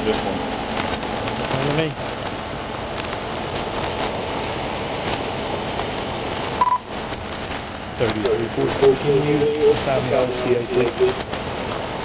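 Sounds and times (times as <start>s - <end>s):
steady rushing noise: 0.0s - 12.0s
short electronic beep: 6.6s - 6.9s.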